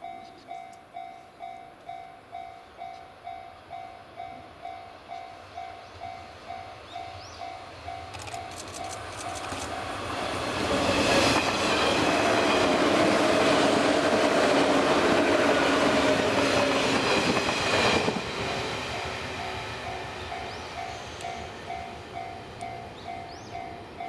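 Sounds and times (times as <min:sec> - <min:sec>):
crossing warning bell: 0:00.0 - 0:09.8, 0:15.1 - 0:24.0
train wheels clattering: 0:07.9 - 0:23.8.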